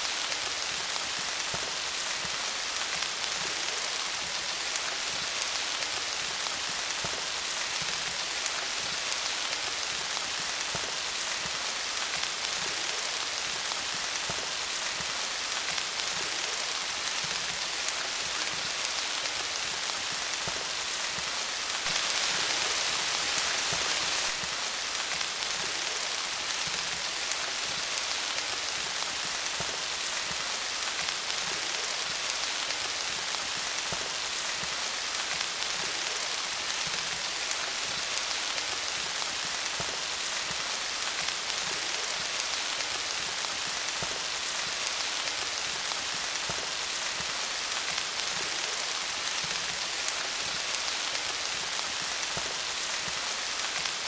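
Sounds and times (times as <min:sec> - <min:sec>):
rain falling on leaves: 0:00.0 - 0:54.0.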